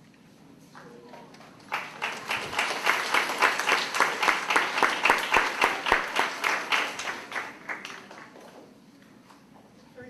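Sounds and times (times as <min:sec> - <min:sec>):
audience applauding: 0:01.6 - 0:08.4
close hands clapping steadily: 0:01.6 - 0:08.6.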